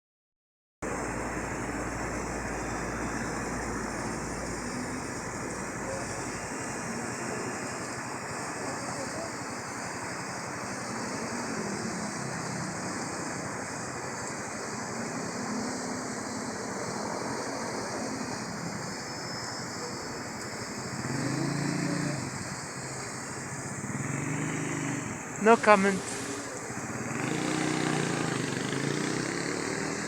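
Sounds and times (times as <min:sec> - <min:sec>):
city traffic hum: 0:00.8 - 0:30.0
waterfall rushing: 0:21.5 - 0:30.0.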